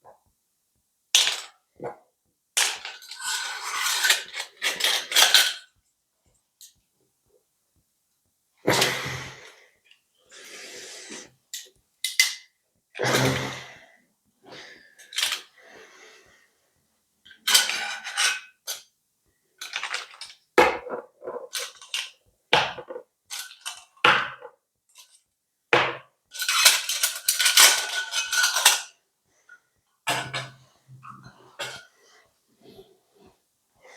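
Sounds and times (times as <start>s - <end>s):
hard objects clattering and clinking: 26.4s - 28.9s.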